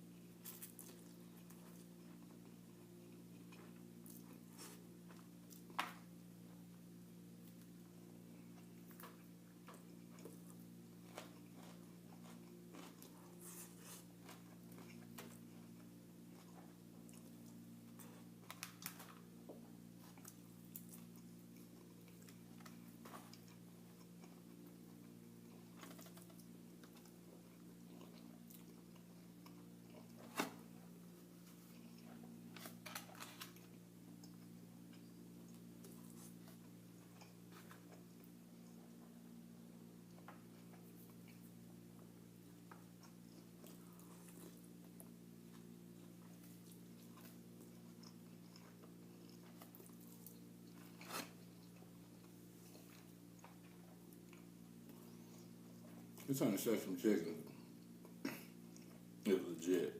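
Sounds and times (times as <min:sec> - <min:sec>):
person chewing and crunching food: 0:00.0 - 0:56.3, 0:57.5 - 0:59.8
steady low hum: 0:00.0 - 0:59.9.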